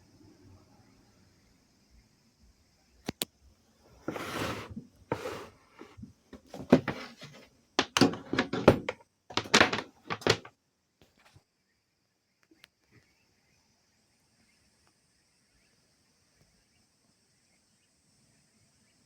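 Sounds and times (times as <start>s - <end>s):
hard objects knocking and scraping: 4.0s - 10.5s.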